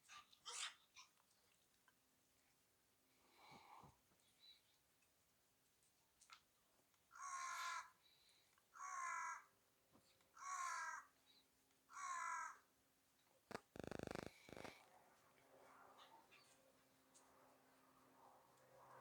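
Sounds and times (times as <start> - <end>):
crow cawing: 7.2 - 7.9, 8.8 - 9.5, 10.4 - 11.0, 11.9 - 12.6
rapid rattling burst: 13.5 - 14.7.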